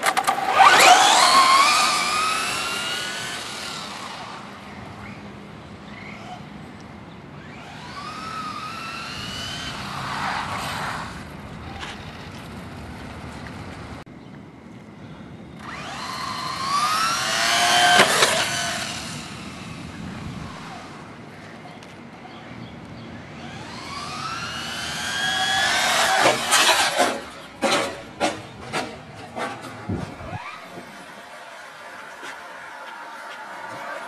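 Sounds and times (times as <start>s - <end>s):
toy truck electric motor whining: 0.0s - 5.2s, 7.4s - 12.5s, 15.6s - 21.2s, 23.3s - 28.0s.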